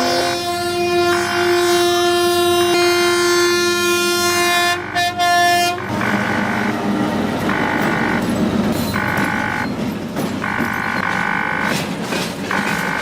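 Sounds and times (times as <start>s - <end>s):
train horn: 0.0s - 8.3s, 9.0s - 9.7s
loud noisy rumble: 5.7s - 9.7s.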